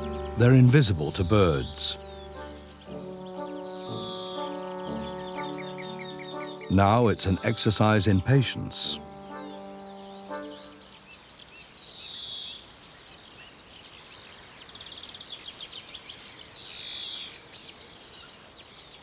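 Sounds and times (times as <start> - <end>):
high rapid bird chirping: 0.0 - 11.4
birdsong: 0.0 - 19.0.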